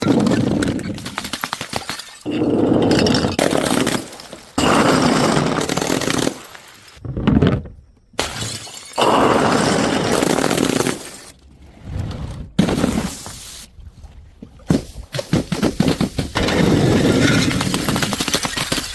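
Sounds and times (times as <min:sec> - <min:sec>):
glass bottles smashing: 0:01.7 - 0:07.0, 0:08.2 - 0:11.3.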